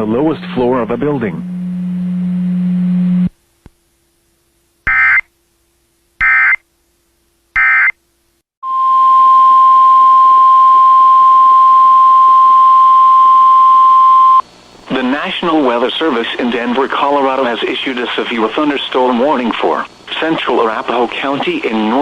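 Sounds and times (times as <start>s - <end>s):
steady low hum: 0.0s - 8.3s
steady warning tone: 4.9s - 5.3s.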